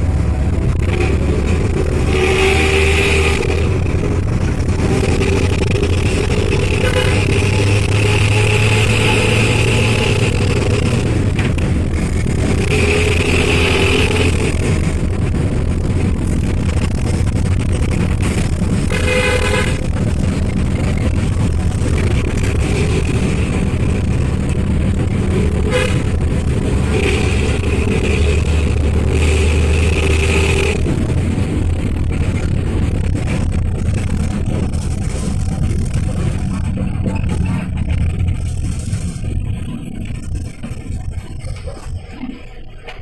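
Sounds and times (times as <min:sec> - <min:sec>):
diesel bus engine rumbling: 0:00.0 - 0:43.0
bus horn: 0:00.7 - 0:11.2, 0:12.3 - 0:15.0, 0:18.8 - 0:20.4, 0:25.3 - 0:31.0.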